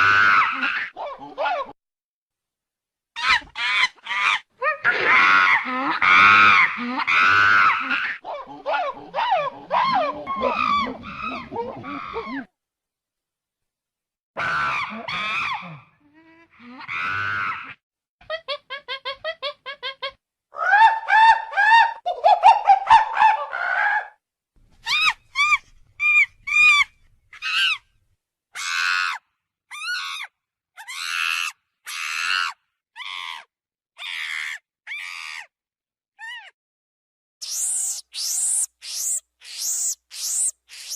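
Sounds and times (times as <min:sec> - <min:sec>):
monkey calling: 0:08.7 - 0:12.5, 0:37.4 - 0:40.9.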